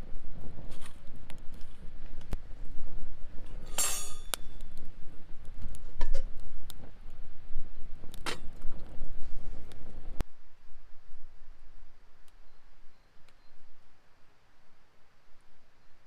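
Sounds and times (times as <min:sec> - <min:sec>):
metal cookware clinking: 0:03.6 - 0:04.6.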